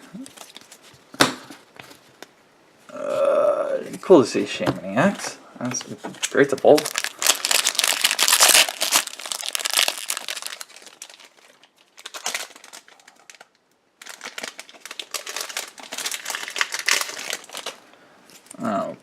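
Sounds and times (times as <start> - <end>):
foil wrapper crinkling: 6.2 - 18.6.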